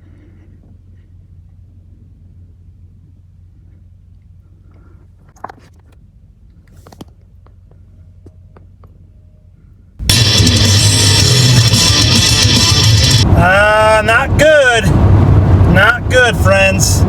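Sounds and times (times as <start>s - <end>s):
loud guitar music: 10.0s - 14.3s.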